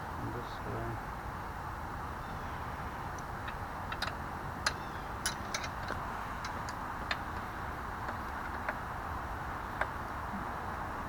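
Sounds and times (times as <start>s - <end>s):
steady background hiss: 0.0s - 11.0s
wrench clicking on chain adjuster: 3.5s - 7.4s.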